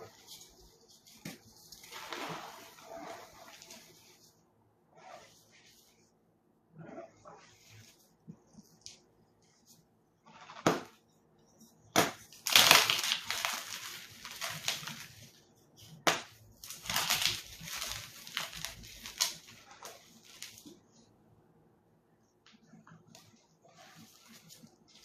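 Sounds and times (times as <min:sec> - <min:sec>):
dense crackling and crunching: 0:00.0 - 0:04.3, 0:10.2 - 0:11.0, 0:11.9 - 0:20.8
brittle material cracking and crunching: 0:12.0 - 0:15.2, 0:16.1 - 0:20.7.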